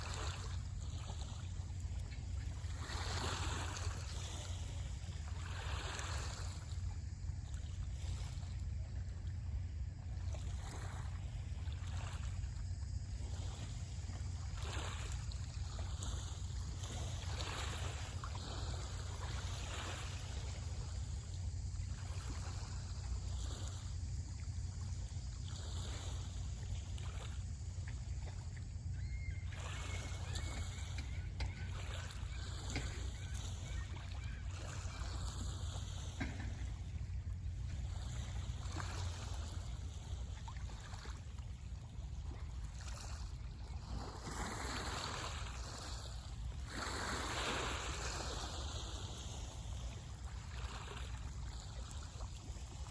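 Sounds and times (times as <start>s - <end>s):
small waves splashing: 0.0s - 52.9s.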